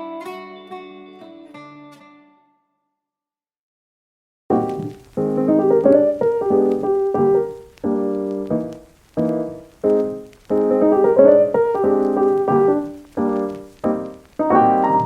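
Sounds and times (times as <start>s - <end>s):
piano chords ringing: 4.5s - 15.0s.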